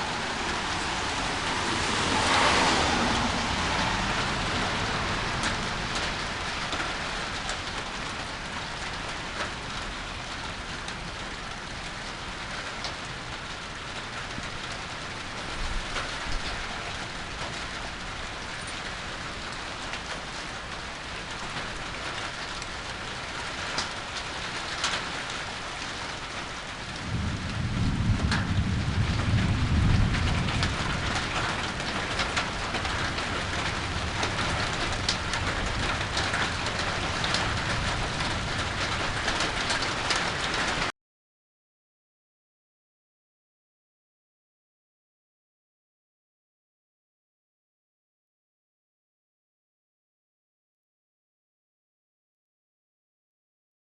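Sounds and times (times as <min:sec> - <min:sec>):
low roll of thunder: 0:00.0 - 0:08.6, 0:26.9 - 0:40.9
steady rain falling: 0:00.0 - 0:40.9.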